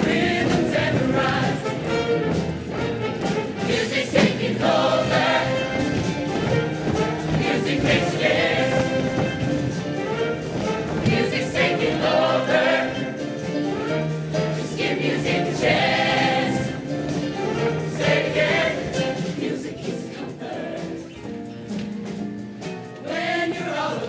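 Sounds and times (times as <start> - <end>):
choir singing: 0.0 - 21.2, 23.0 - 24.0.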